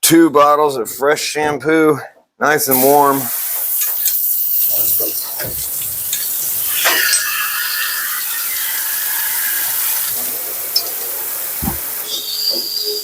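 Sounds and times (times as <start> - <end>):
water spraying from hand sprayer: 2.8 - 13.0.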